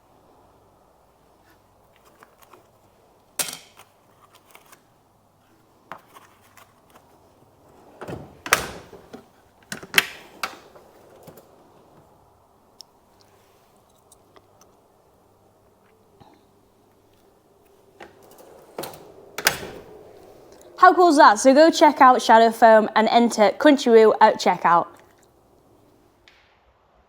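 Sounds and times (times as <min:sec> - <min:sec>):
faint steady hum: 0:00.0 - 0:27.0
handling clicks and knocks: 0:01.9 - 0:04.8, 0:05.8 - 0:12.1, 0:17.2 - 0:20.7.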